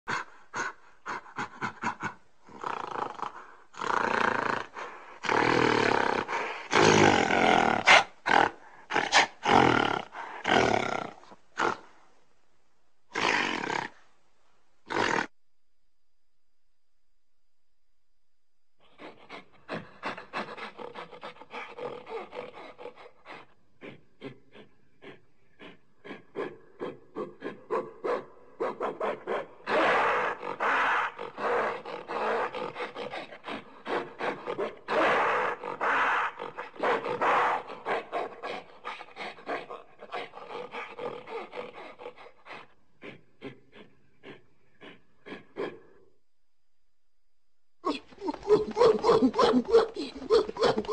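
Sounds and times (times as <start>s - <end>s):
primate screaming calls: 29.6s - 33.0s, 33.6s - 37.9s
primate grunting hooting calls: 47.8s - 50.9s.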